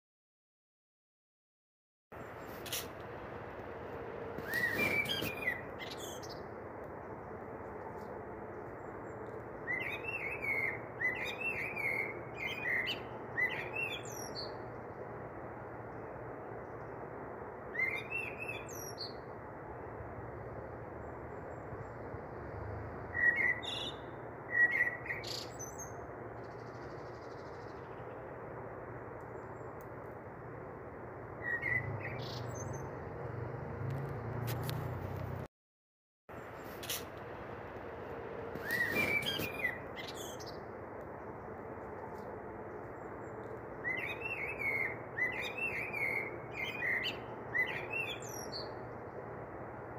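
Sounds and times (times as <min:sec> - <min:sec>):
birds chirping: 0:04.4 - 0:06.5, 0:31.4 - 0:33.3, 0:38.6 - 0:40.8.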